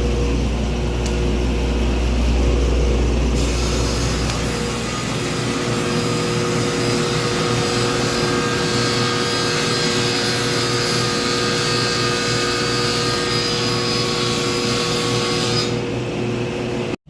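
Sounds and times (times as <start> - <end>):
electric power saw cutting: 3.4 - 15.9.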